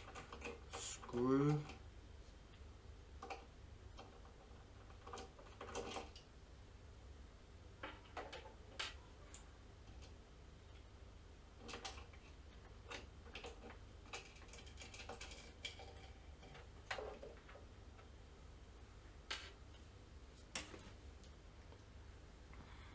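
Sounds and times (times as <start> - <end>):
faint low hum: 0.0 - 22.9.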